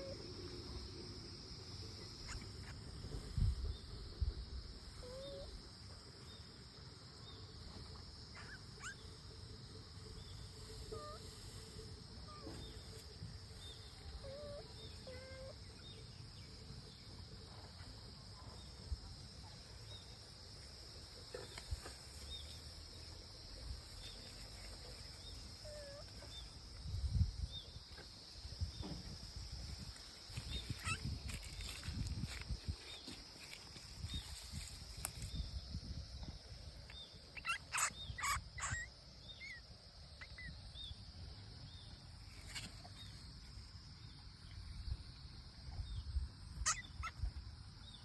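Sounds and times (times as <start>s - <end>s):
high-pitched insect drone: 21.7s - 41.2s.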